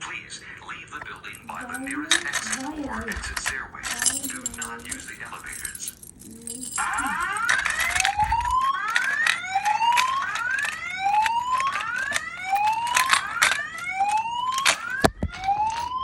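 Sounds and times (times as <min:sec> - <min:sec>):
fire alarm whoop tone: 0:08.0 - 0:16.0.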